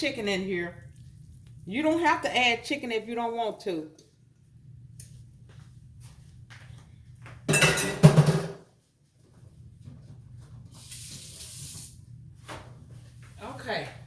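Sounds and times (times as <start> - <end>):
metal pan clattering: 7.5 - 8.6.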